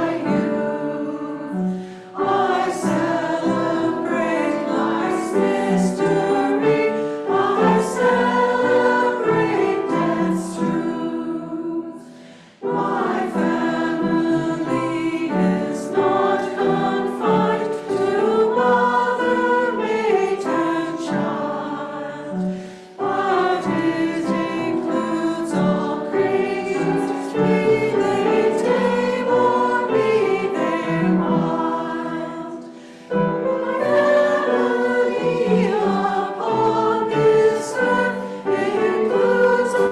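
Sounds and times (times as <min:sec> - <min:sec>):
congregation singing a hymn: 0:00.0 - 0:39.9.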